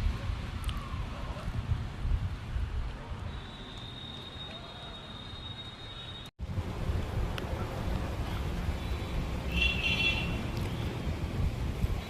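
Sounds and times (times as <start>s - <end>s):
wind on microphone: 0.0s - 3.3s, 6.4s - 12.0s
road traffic: 0.0s - 12.0s.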